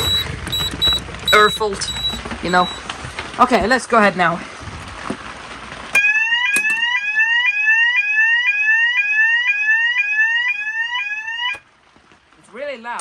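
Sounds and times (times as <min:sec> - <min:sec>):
fire alarm rising sweep tone: 0:00.0 - 0:02.8, 0:06.0 - 0:11.6
alarm switching on click: 0:00.0 - 0:02.9, 0:06.0 - 0:07.0, 0:11.4 - 0:11.6.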